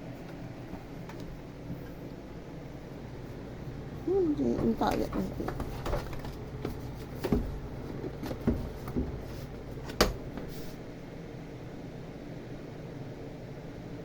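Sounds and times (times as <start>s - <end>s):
low steady hum: 0.0s - 14.0s
soft knocks: 4.5s - 10.5s.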